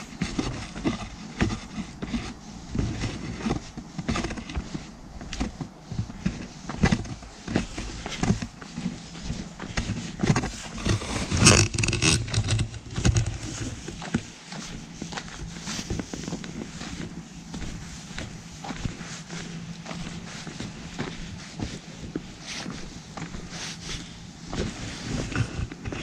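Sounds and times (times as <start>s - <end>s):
knocks clicks and scrapes: 9.7s - 14.7s.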